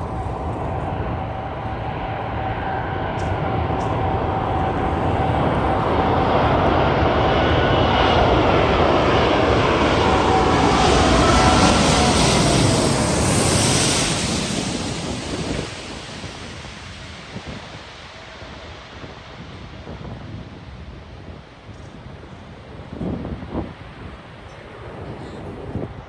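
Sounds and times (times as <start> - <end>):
jet engines rushing with whine: 0.0 - 26.0.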